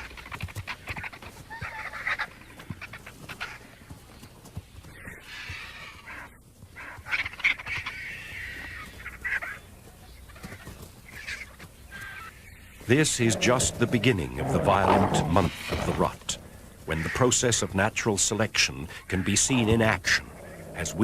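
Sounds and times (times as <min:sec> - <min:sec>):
harsh raspy animal calls: 0:12.9 - 0:17.4, 0:18.9 - 0:21.0.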